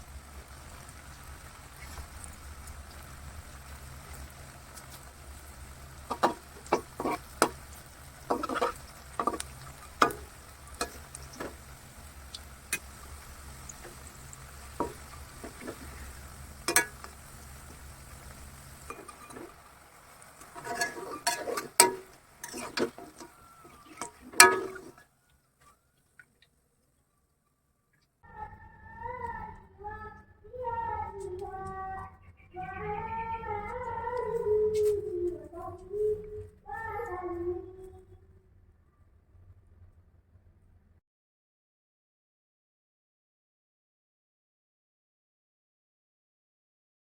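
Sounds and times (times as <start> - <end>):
kitchen utensils clattering: 6.1 - 7.6, 8.3 - 11.6, 16.7 - 17.1, 18.9 - 19.6, 20.4 - 25.0.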